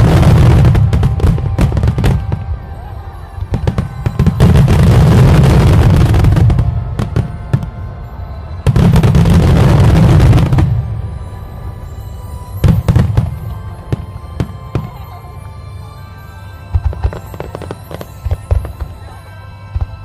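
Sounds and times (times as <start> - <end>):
fireworks bangs and pops: 0.0 - 2.6, 3.4 - 7.8, 8.6 - 10.8, 12.6 - 15.0, 16.7 - 19.0
fireworks crackling: 0.0 - 20.0
music playing: 0.0 - 20.0.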